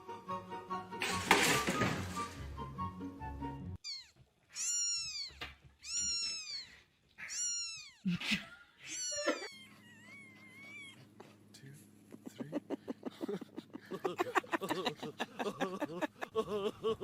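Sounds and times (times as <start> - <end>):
cat meowing: 3.8 - 8.0, 8.9 - 11.0.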